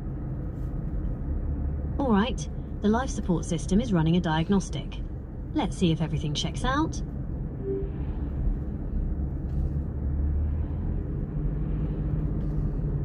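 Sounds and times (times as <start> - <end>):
low rumble with faint hiss: 0.0 - 13.0
brief faint tone: 7.6 - 8.4.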